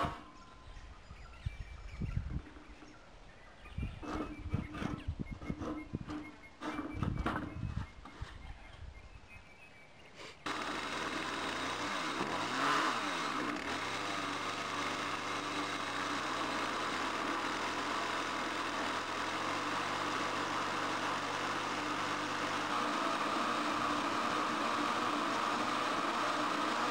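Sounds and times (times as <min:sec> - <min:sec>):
engine running: 0:00.0 - 0:00.4, 0:10.5 - 0:26.9.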